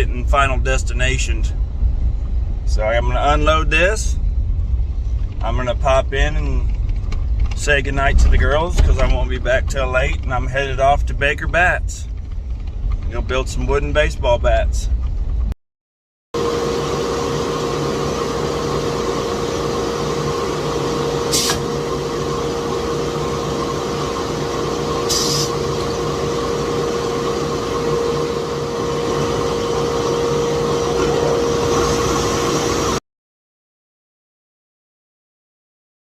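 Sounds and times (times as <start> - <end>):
machine hum: 0.0 - 15.6, 16.4 - 33.0
short hissing bursts: 25.1 - 25.6.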